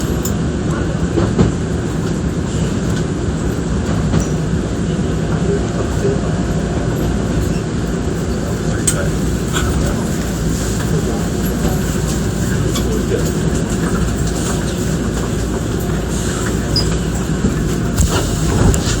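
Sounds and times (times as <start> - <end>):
electric train rumble and hum: 0.0 - 19.0.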